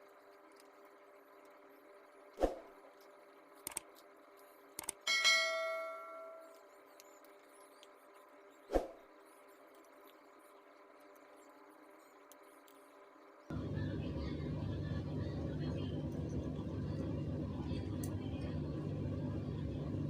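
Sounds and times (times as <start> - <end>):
small clicks: 2.9 - 5.1
metal piece striking and ringing: 5.1 - 6.6.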